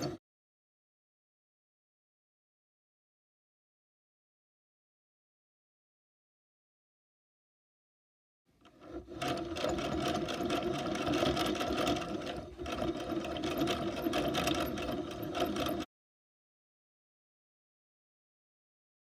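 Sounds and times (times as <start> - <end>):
yarn winder whirring: 0.0 - 0.2, 8.6 - 15.9.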